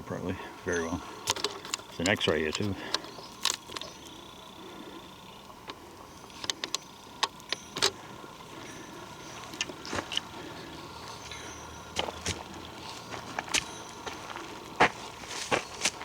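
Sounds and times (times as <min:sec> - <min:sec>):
footsteps crunching on forest floor: 0:07.9 - 0:16.0.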